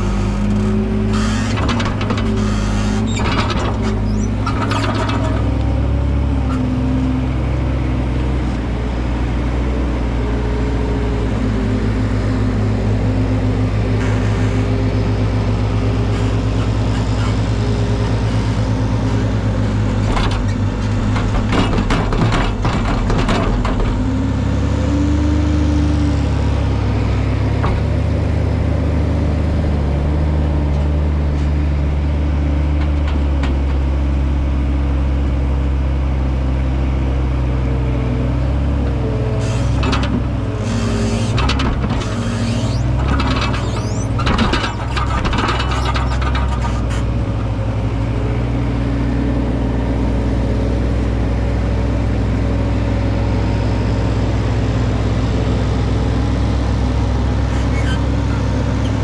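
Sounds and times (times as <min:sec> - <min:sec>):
farm machinery engine running: 0:00.0 - 0:59.0
clattering and rattling: 0:20.0 - 0:24.1, 0:41.2 - 0:47.2.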